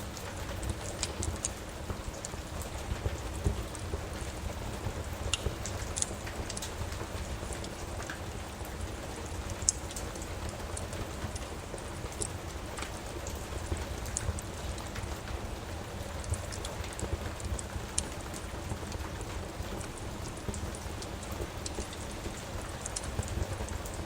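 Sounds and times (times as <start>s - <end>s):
steady rain on a surface: 0.0s - 24.0s.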